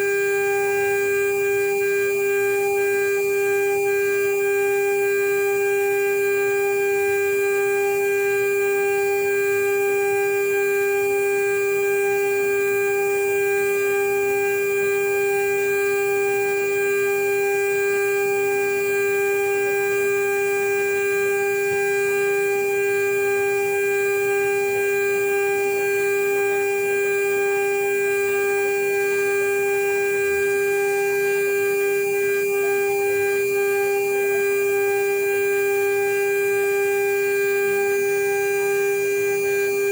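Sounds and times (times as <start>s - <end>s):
router spindle whine: 22.0s - 39.9s.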